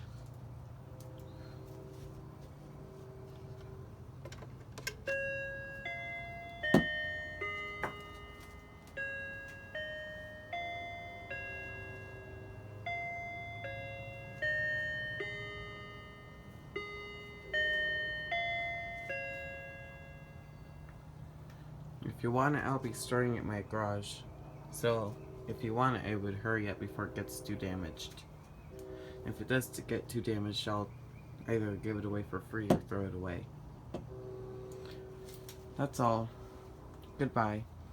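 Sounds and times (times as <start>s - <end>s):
electronic bell-like chime melody: 5.1s - 21.2s.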